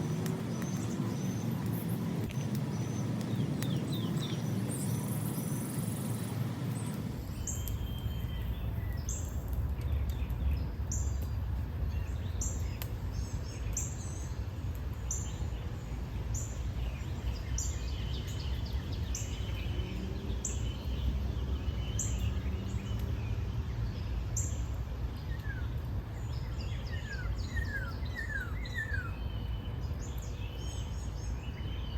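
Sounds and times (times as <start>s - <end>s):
birds chirping: 15.0s - 31.9s.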